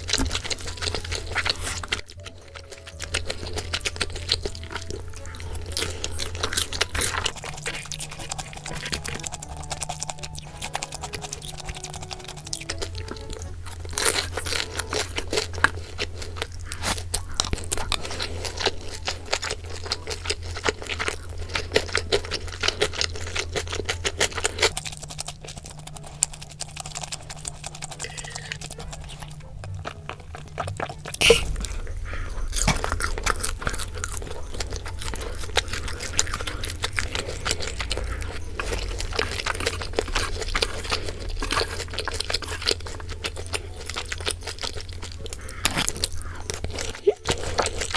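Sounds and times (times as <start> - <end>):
person chewing crunchy food: 0.0 - 47.9.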